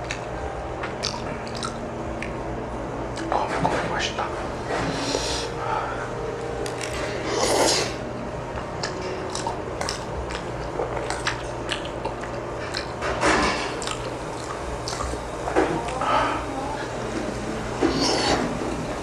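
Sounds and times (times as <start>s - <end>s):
wet chewing and mouth noise: 0.0s - 2.4s, 6.6s - 17.0s.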